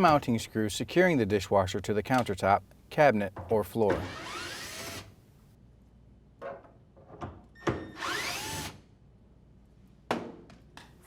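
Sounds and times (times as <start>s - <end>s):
cordless drill whining: 7.9s - 8.7s.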